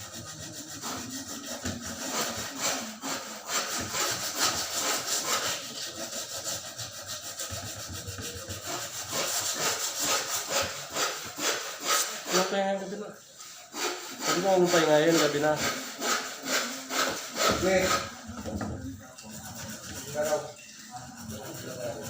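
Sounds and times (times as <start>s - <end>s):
hand tool rasping: 0.0s - 12.5s.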